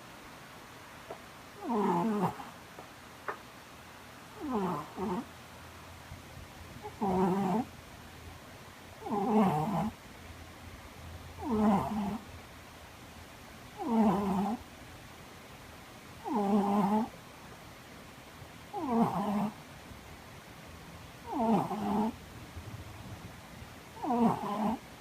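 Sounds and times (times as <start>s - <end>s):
cat snoring loudly: 1.6s - 2.6s, 4.4s - 5.3s, 6.8s - 7.7s, 9.0s - 10.0s, 11.4s - 12.3s, 13.8s - 14.6s, 16.2s - 17.1s, 18.7s - 19.6s, 21.2s - 22.2s, 24.0s - 24.9s.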